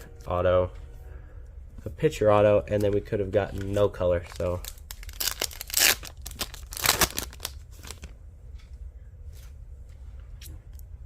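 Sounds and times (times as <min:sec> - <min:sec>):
foil wrapper tearing and crinkling: 0:03.5 - 0:08.1.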